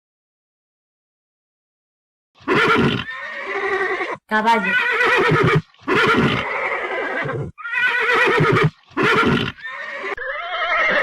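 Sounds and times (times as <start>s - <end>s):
horse whinnying: 2.4s - 11.0s.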